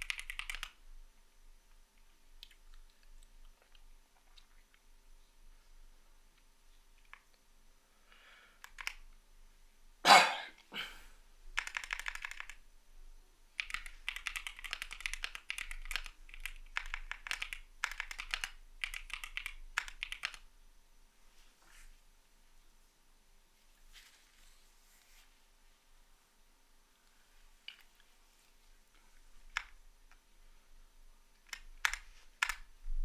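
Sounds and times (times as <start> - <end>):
mechanical keyboard typing: 0.0 - 0.8, 8.6 - 9.0, 11.6 - 12.6, 13.6 - 20.4, 31.4 - 32.7.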